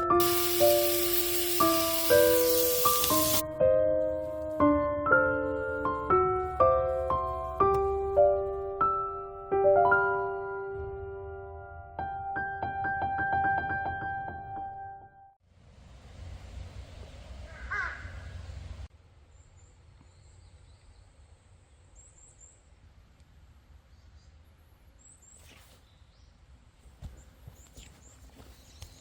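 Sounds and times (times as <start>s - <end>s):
crow cawing: 17.5s - 18.4s
small birds chirping: 27.1s - 29.0s.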